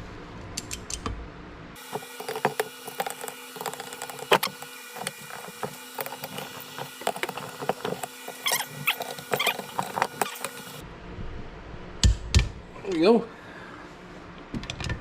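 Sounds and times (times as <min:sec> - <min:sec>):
short squeaks: 0:08.4 - 0:10.6.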